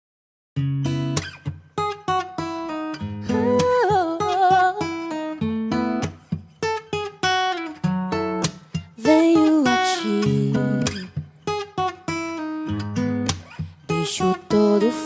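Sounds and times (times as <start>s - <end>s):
acoustic guitar picking: 0.6s - 15.0s
wordless sung line: 3.0s - 5.1s, 9.0s - 11.1s, 13.9s - 15.0s.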